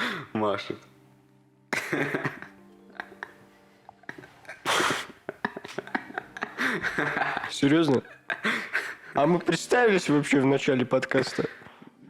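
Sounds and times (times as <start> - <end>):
music with held chords: 0.0 - 12.0
loud breathy burst of noise: 4.6 - 5.2.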